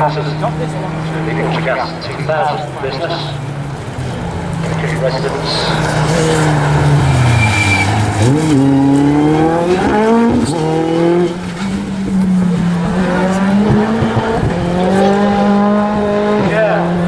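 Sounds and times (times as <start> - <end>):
car engine revving: 0.0 - 17.0
tyre squeal: 3.2 - 12.1.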